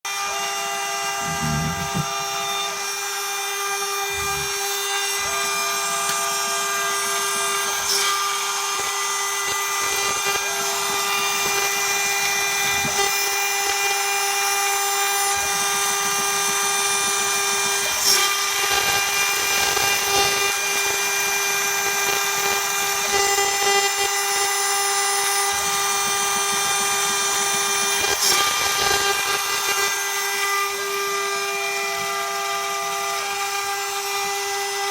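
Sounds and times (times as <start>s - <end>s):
spindle high whine: 0.1s - 13.8s
hiss of metal cutting: 0.9s - 6.8s.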